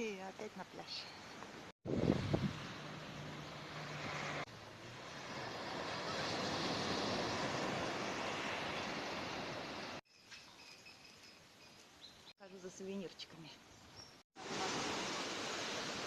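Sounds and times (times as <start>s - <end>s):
sea surf rushing on beach: 1.9s - 10.0s, 14.4s - 16.0s.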